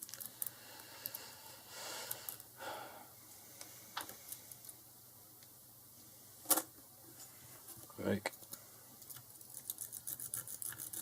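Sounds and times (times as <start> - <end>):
person sighing heavily: 1.3 - 3.2.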